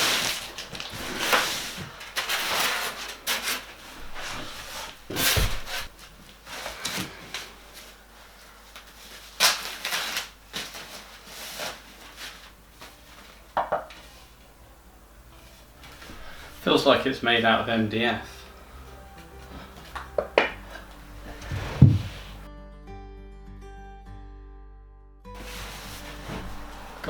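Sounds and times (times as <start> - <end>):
cardboard scraping and rustling: 0.0 - 8.0, 8.7 - 14.4, 20.6 - 22.5, 25.4 - 27.0
heavy thump: 21.4 - 22.4.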